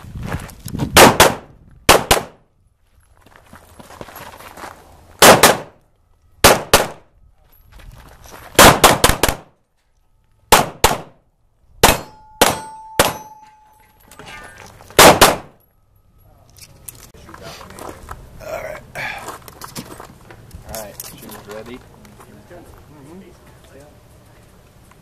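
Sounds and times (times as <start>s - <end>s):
pistol shots: 1.0s - 2.4s, 5.2s - 5.8s, 6.4s - 7.0s, 8.6s - 9.5s, 10.5s - 11.2s, 11.8s - 13.4s, 15.0s - 15.6s
bullets ringing on steel targets: 11.8s - 14.7s.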